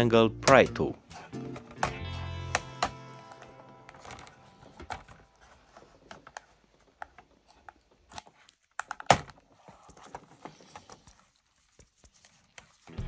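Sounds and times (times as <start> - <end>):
keyboard clips snapping: 1.5 - 5.2.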